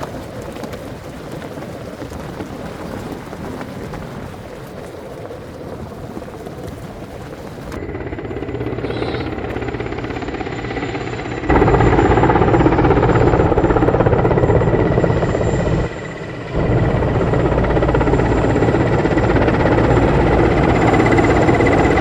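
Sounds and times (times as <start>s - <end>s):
helicopter rotor and engine: 7.7s - 22.0s
high-pitched whine: 7.8s - 22.0s.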